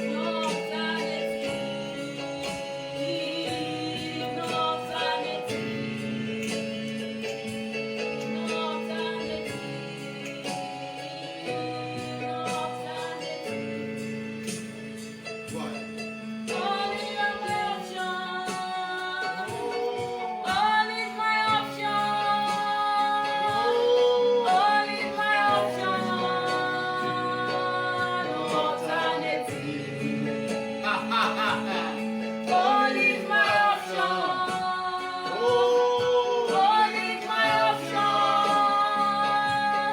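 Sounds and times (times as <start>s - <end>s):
woman singing gospel: 0.0s - 14.6s, 16.5s - 39.9s
held chords: 0.0s - 39.9s.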